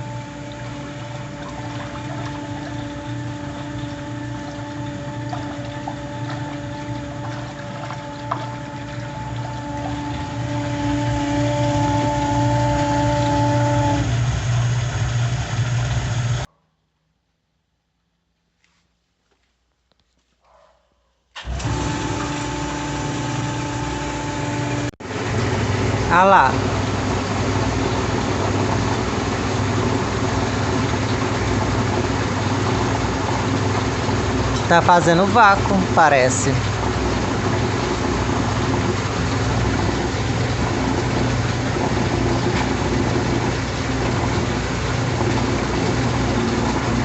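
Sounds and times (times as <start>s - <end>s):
high whine: 0.0s - 16.5s
washing machine motor and pump hum: 0.0s - 16.5s, 21.4s - 47.0s.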